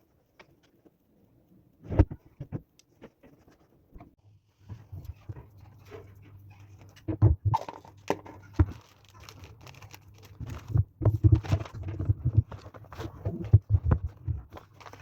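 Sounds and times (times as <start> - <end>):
objects knocking on hard surface: 10.7 - 14.6.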